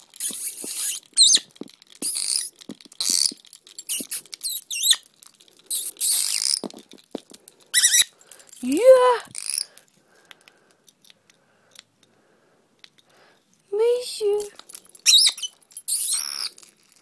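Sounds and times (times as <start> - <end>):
parrot squeaking: 0.2 - 5.1, 5.7 - 6.6, 7.7 - 8.1, 9.3 - 9.7, 15.0 - 16.6.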